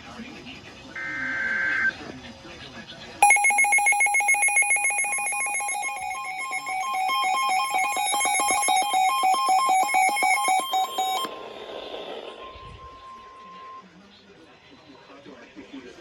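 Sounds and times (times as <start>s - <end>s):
rapid buzzy two-pitch beeps: 3.2s - 11.3s.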